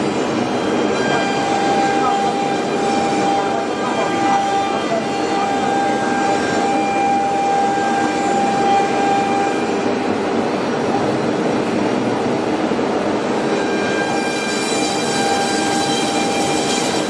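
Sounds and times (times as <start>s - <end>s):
router machine running: 0.0s - 9.7s.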